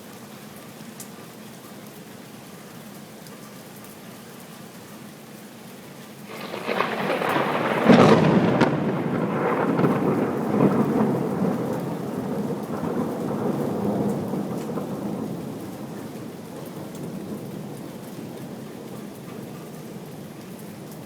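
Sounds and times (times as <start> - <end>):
steady rain: 0.0 - 21.0
rolling thunder: 6.3 - 19.0.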